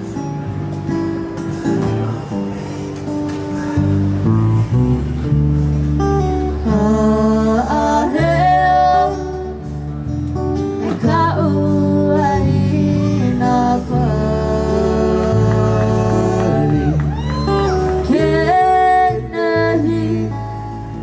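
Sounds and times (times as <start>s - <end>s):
acoustic guitar strumming: 0.0s - 21.0s
person singing: 10.8s - 20.6s.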